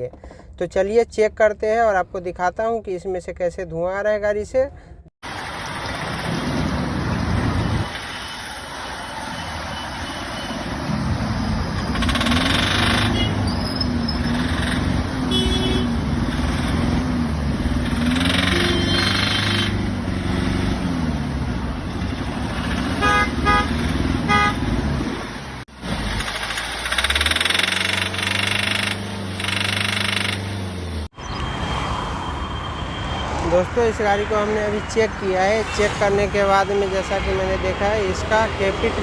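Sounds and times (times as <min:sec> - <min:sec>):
diesel engine revving with knock: 0:10.8 - 0:31.6.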